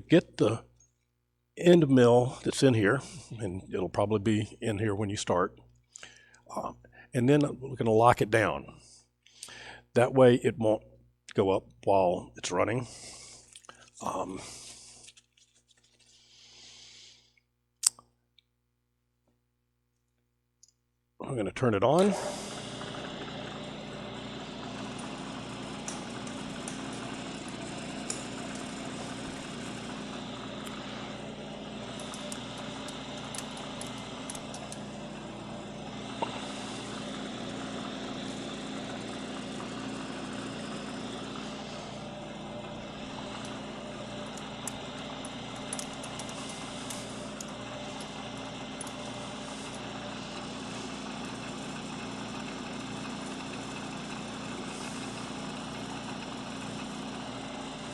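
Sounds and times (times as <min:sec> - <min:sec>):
milling machine motor hum: 0:21.8 - 0:57.9.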